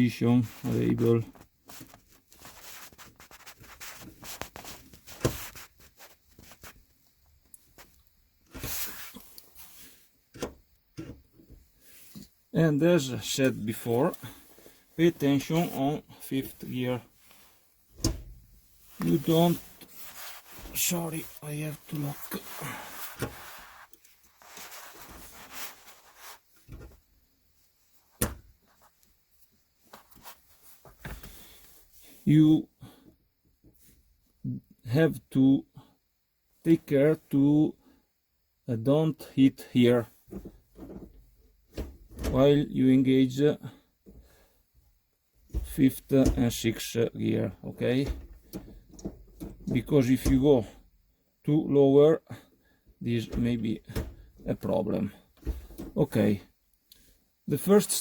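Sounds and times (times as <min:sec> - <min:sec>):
scrape or rustle: 0:01.6 - 0:06.8, 0:08.6 - 0:10.0, 0:18.8 - 0:26.6, 0:29.8 - 0:32.2
hands rubbing on mechanism: 0:01.7 - 0:06.9, 0:18.8 - 0:26.6.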